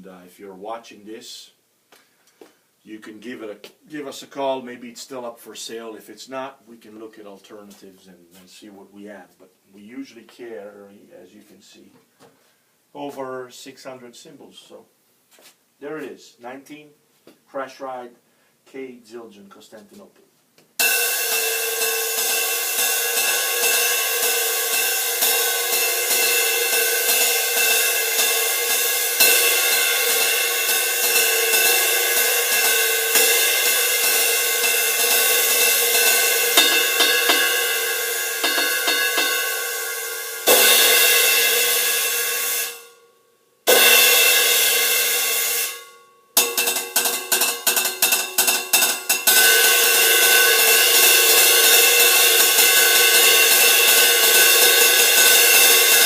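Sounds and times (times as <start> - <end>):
cymbal crashes: 20.8 - 43.1, 43.7 - 56.0
ride cymbal played with stick: 20.8 - 56.0.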